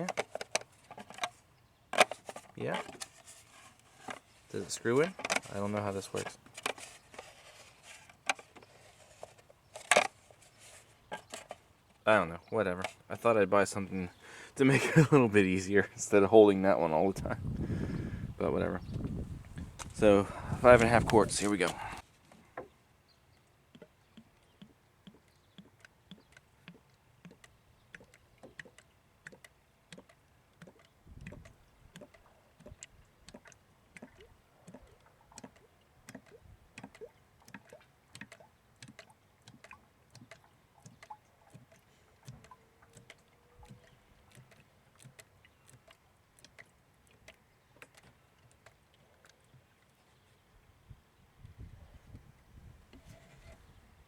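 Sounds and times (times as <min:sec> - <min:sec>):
oil glugging through a funnel: 0:16.9 - 0:50.7.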